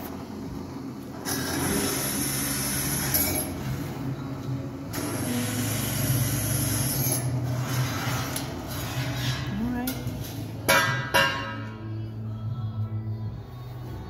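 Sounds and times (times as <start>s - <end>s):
drill press motor hum: 0.0s - 4.1s, 4.7s - 8.4s.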